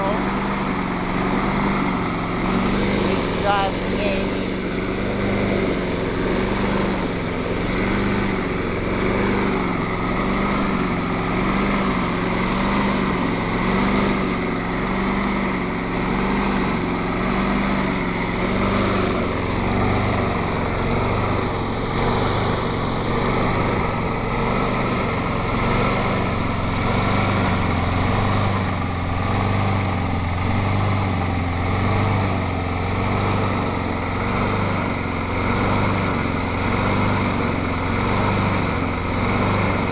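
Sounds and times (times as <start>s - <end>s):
lawn mower engine surging: 0.0s - 39.9s.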